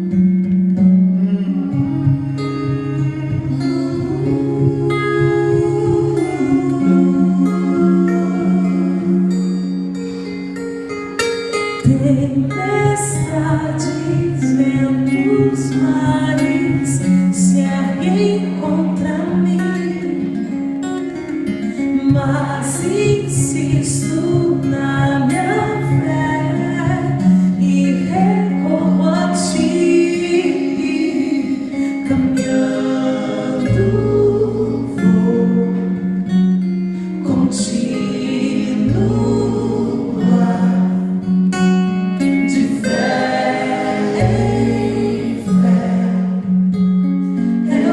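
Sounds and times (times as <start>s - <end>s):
steady bass: 0.0s - 10.8s, 32.0s - 47.9s
guitar: 0.0s - 47.9s
sustained vocal chords: 1.0s - 10.9s, 21.9s - 47.9s
person singing: 1.1s - 9.8s, 21.9s - 36.2s.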